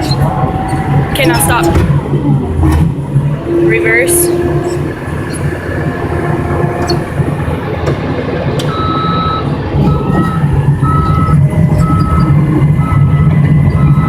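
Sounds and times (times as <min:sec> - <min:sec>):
bulldozer backup alarm beeping: 0:00.0 - 0:14.0
diesel engine running: 0:00.0 - 0:14.0.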